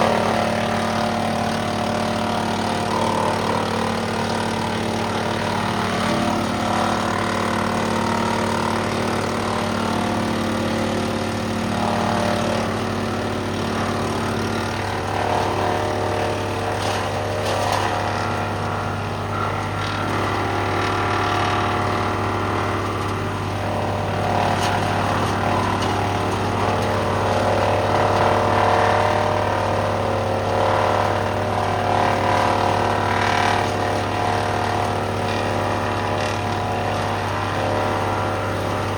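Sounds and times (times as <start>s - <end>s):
tractor engine drone: 0.0s - 38.9s.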